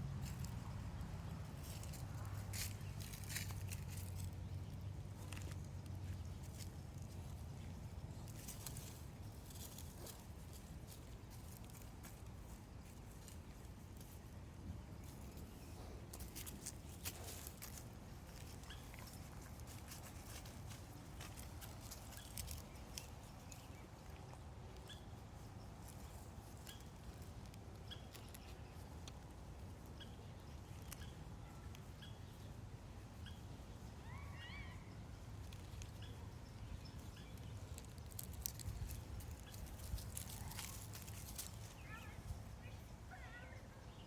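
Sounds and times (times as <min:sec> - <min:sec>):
low steady rumble: 0:00.0 - 0:44.0
wavering squeaky call: 0:34.0 - 0:35.0.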